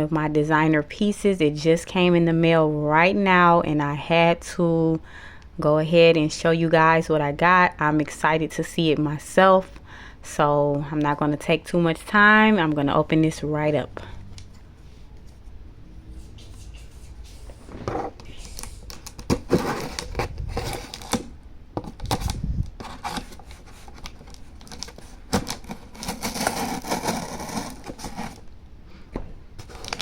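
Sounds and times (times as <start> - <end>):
cardboard tearing and rustling: 17.7 - 21.3, 21.9 - 28.4, 29.6 - 30.0.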